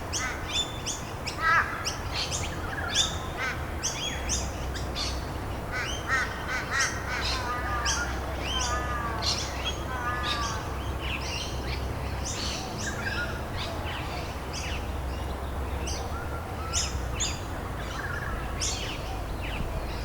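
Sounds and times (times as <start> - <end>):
birds chirping: 0.0 - 20.0.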